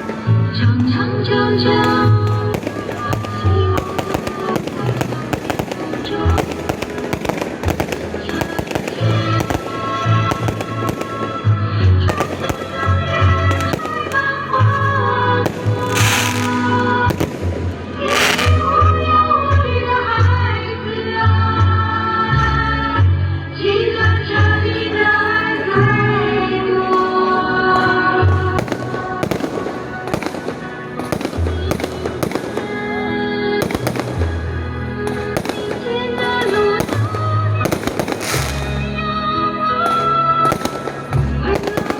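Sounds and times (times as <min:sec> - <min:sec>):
fireworks bangs and crackles: 0:00.0 - 0:01.0, 0:01.6 - 0:18.8, 0:27.7 - 0:39.1, 0:39.8 - 0:41.9
music playing: 0:00.0 - 0:41.9.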